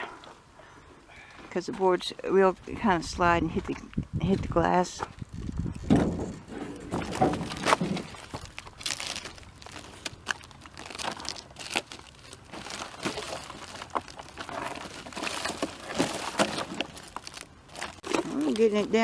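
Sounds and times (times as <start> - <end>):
crunching and rustling: 3.6 - 19.0
wood pieces knocking and clattering: 5.8 - 9.2.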